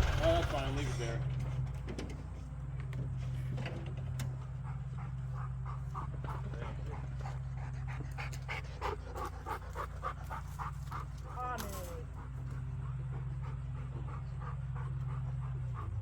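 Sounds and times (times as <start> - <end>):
rapid panting: 0.0 - 1.0, 4.4 - 16.0
engine idling hum: 0.0 - 16.0.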